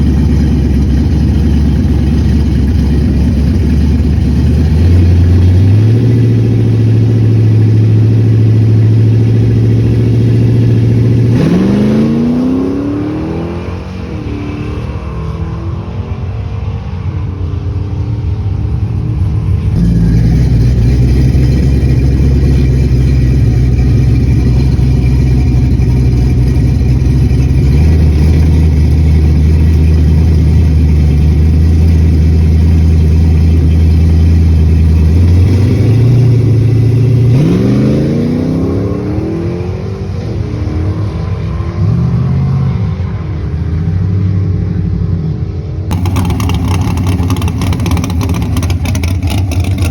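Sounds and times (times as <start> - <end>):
truck engine revving: 0.0 - 14.8, 19.6 - 40.6, 45.9 - 49.9.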